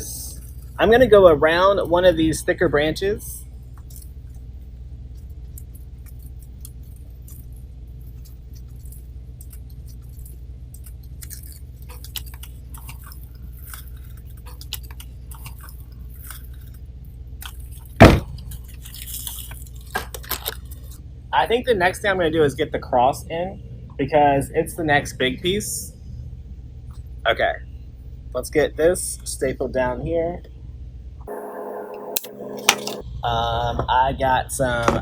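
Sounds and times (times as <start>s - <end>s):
steady low hum: 31.3s - 33.0s.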